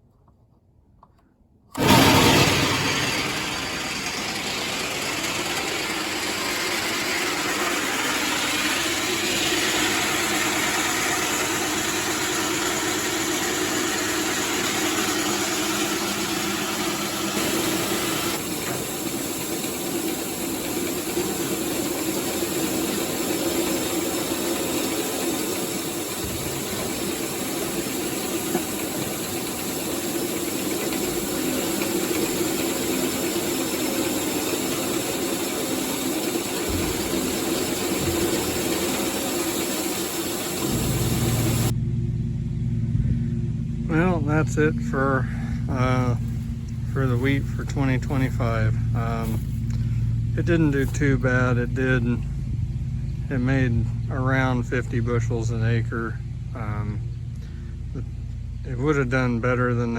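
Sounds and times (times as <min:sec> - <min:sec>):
grain auger hissing rush: 0:01.7 - 0:41.8, 0:45.2 - 0:51.8
engine running: 0:01.7 - 0:59.9.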